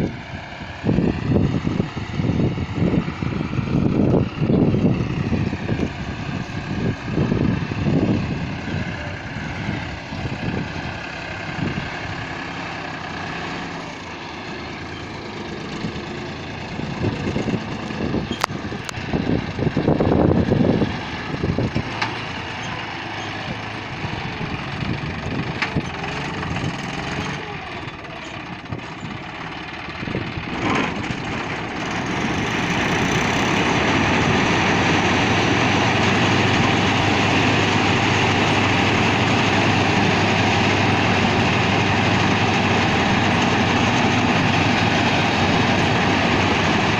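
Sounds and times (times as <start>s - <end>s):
harvester engine running: 0.0s - 46.9s.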